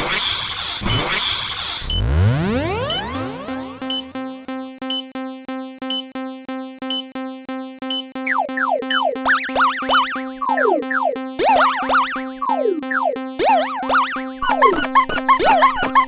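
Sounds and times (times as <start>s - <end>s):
steady synth tones: 8.2s - 16.0s.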